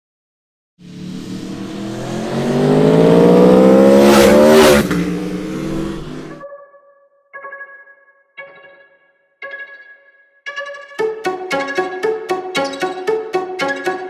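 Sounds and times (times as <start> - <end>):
motorcycle engine accelerating: 0.8 - 6.4.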